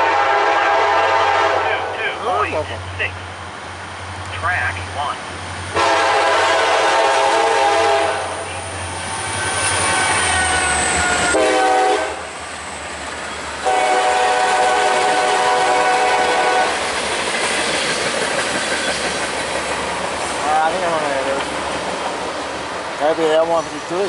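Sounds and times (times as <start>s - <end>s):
locomotive air horn blasts: 0.0s - 1.9s, 5.7s - 8.5s, 11.3s - 12.3s, 13.6s - 16.8s
train rumble: 0.0s - 24.0s.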